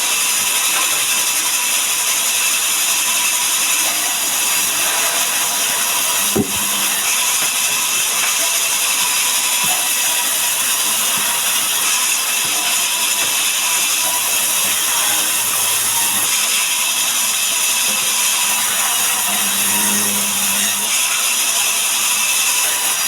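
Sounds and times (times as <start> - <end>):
sawmill saw cutting log: 0.0 - 23.0.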